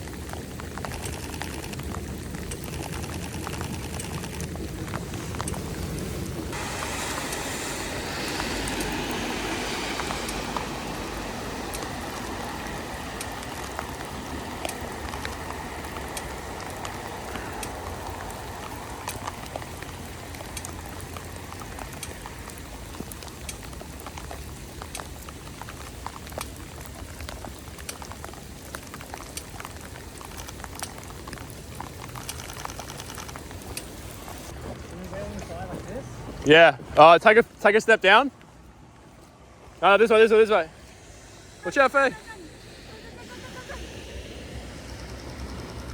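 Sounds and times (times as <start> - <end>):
steady low rumble: 0.0 - 28.7, 38.4 - 45.9
heavy rain falling: 0.0 - 45.9
raindrop ticks: 0.0 - 45.9.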